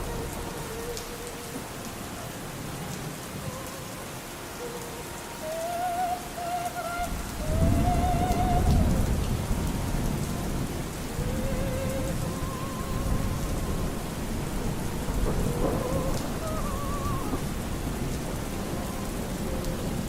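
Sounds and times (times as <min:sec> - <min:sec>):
operatic singing: 0:00.0 - 0:02.4, 0:03.2 - 0:20.0
steady rain: 0:00.0 - 0:20.0
thunder rumble: 0:07.0 - 0:20.0.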